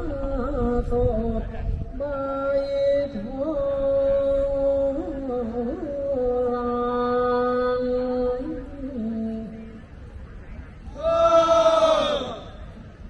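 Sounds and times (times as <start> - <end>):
person chanting long held notes: 0.0 - 9.8.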